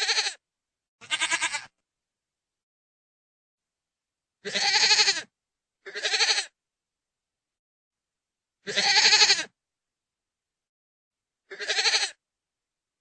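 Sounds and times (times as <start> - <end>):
goat bleating: 0.0 - 0.4, 1.0 - 1.8, 4.4 - 6.5, 8.7 - 9.5, 11.5 - 12.2.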